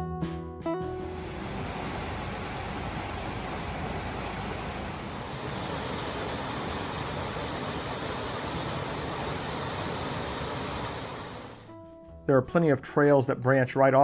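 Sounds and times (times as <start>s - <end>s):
mountain stream rushing: 1.1s - 11.7s.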